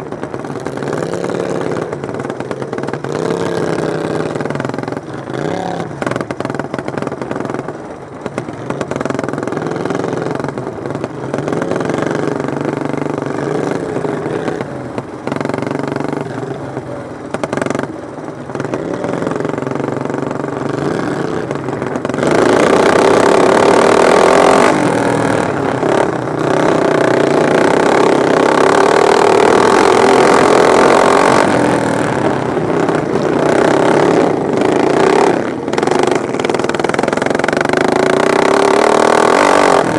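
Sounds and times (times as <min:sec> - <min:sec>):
racing lawn mower engines revving: 0:00.0 - 0:39.9.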